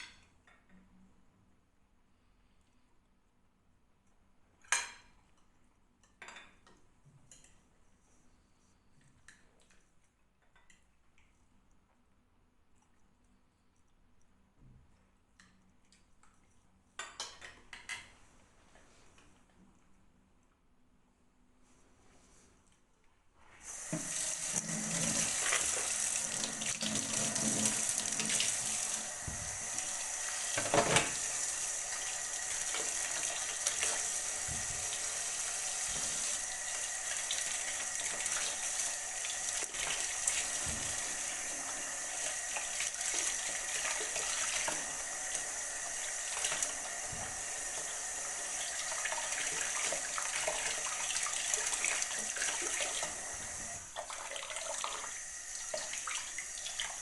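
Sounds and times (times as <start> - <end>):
tap running into sink: 23.8 - 31.5, 39.6 - 48.0.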